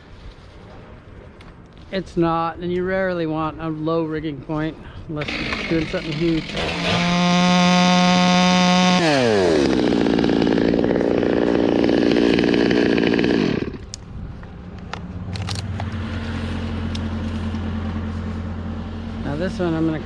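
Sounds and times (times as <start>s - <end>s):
chainsaw revving and idling: 5.2s - 14.0s
low engine hum: 9.6s - 20.0s.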